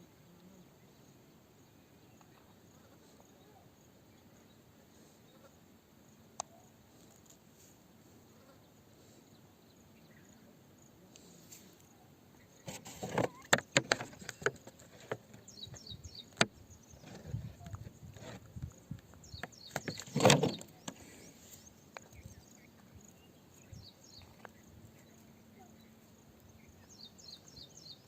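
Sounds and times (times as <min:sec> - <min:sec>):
faint bird chirps: 0:00.2 - 0:07.2, 0:08.2 - 0:13.6, 0:14.2 - 0:28.0
scraping clatter: 0:12.6 - 0:15.6, 0:19.6 - 0:21.1.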